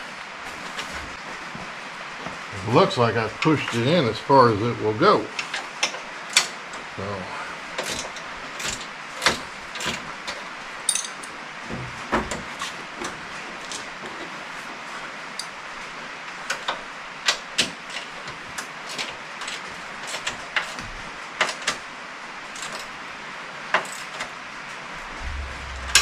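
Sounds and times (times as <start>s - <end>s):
steady background hiss: 0.0s - 8.8s, 23.7s - 26.0s.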